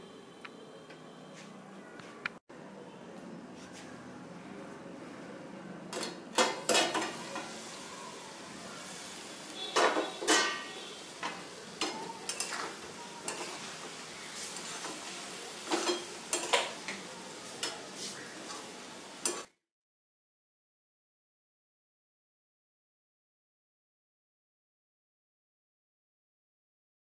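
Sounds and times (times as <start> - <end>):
curry sizzling in a pan: 6.0 - 19.6.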